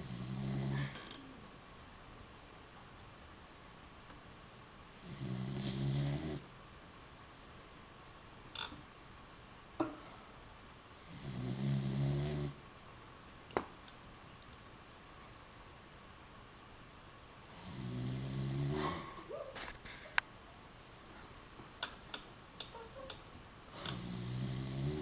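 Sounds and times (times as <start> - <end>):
dog snoring: 0.0 - 1.0, 4.9 - 6.5, 11.0 - 12.6, 17.5 - 19.1, 23.7 - 25.0.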